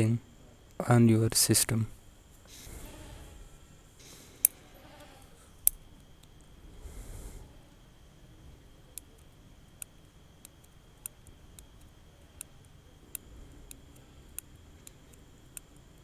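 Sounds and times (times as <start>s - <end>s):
faint high-pitched whine: 0.0s - 16.0s
faint sharp clicks: 8.9s - 16.0s.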